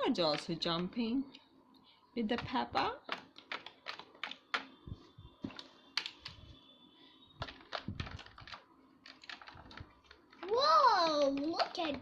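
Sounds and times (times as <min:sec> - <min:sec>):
plastic toys clattering: 0:02.3 - 0:04.8, 0:07.4 - 0:12.0.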